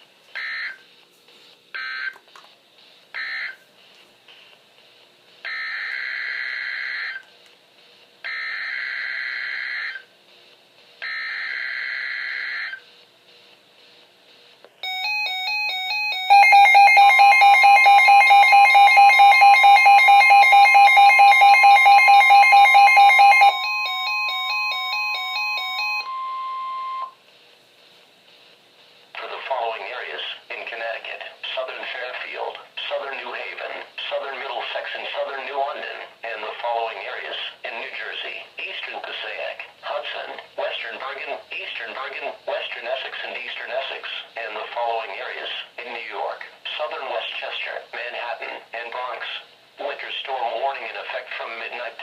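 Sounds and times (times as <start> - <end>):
steady warning alarm tone: 3.2 - 3.6, 5.5 - 7.3, 8.3 - 10.1, 11.0 - 12.8, 14.8 - 27.2
fast-pulsing electronic alarm beep: 14.8 - 27.2
two-tone data bursts: 16.0 - 27.1.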